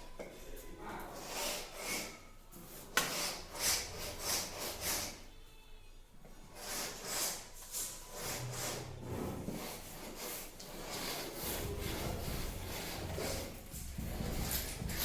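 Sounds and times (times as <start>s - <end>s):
scraping on plaster: 6.5s - 15.0s.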